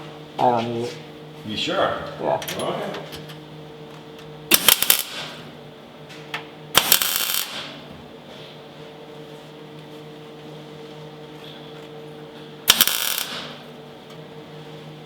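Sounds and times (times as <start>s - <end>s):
steady hum: 0.0s - 15.0s
mig welding crackle: 4.5s - 5.5s, 6.8s - 7.9s, 12.7s - 13.7s.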